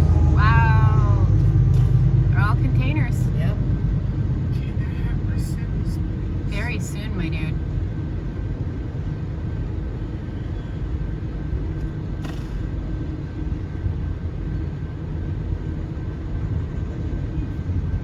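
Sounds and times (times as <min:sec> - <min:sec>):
train wheels rumbling on rails: 0:00.0 - 0:08.4.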